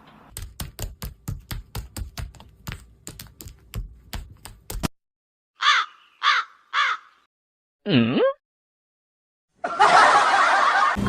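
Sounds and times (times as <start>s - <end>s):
harsh bird call: 5.6s - 7.3s.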